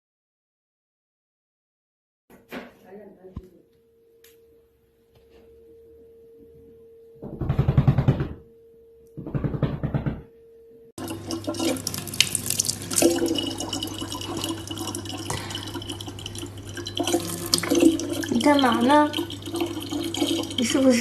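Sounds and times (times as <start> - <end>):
water running from a tap: 11.0 - 21.0.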